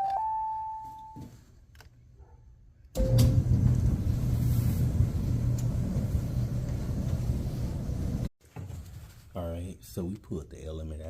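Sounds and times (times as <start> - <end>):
dryer short beep: 3.0 - 3.7
dryer motor and drum rumbling: 3.0 - 8.3.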